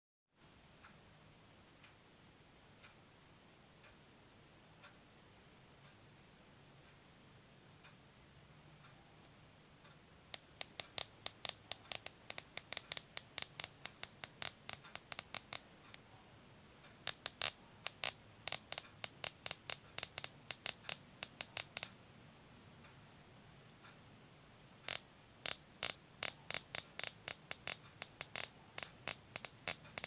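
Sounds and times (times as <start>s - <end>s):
cable tie ratchet clicking: 10.3s - 15.6s, 17.1s - 22.0s, 24.9s - 30.0s.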